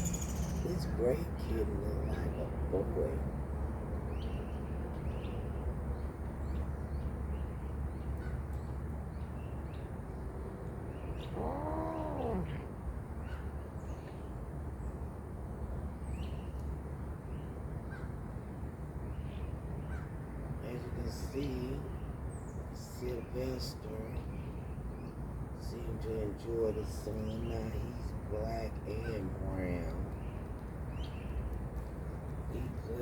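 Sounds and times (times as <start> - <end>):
steady low rumble: 0.0 - 8.0
cat meowing: 11.3 - 12.7.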